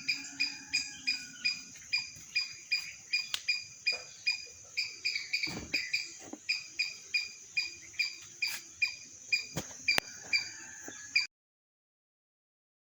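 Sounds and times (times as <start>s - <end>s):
animal chirping: 0.0s - 11.3s
sharp clicks: 2.7s - 10.1s.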